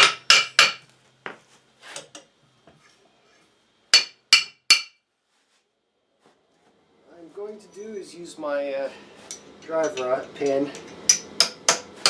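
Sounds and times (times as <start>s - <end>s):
hammer striking steel: 3.9s - 5.0s, 9.3s - 12.0s.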